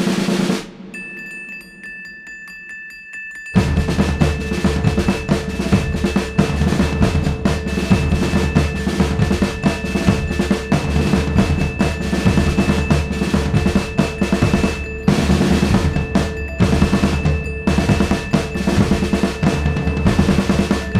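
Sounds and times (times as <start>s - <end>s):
fast drums and percussion: 0.0s - 20.9s
sustained tone: 5.5s - 20.9s.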